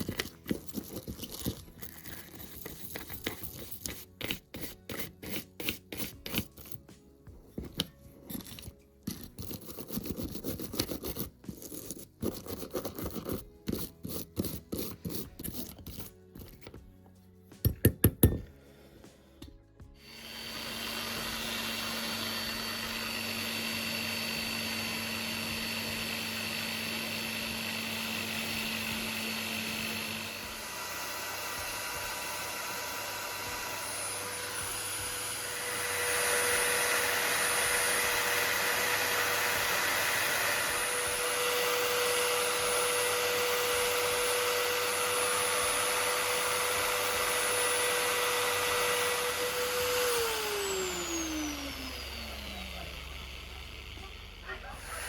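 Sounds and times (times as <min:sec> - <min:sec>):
small electric power tool whining: 0:19.9 - 0:55.0.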